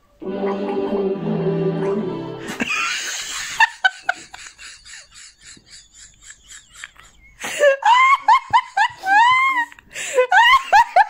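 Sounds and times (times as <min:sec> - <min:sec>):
person laughing: 0:01.8 - 0:11.0.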